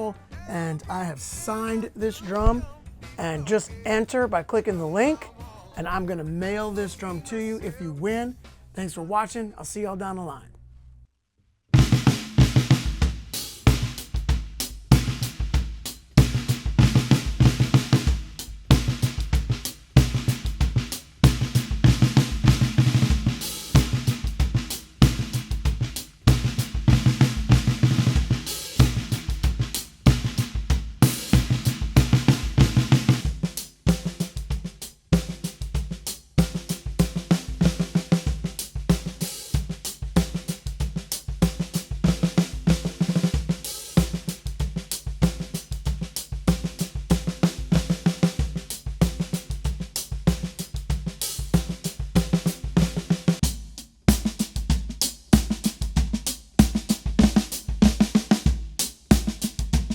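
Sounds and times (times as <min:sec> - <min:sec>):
drum kit playing: 0:00.0 - 0:09.9, 0:11.8 - 0:59.9.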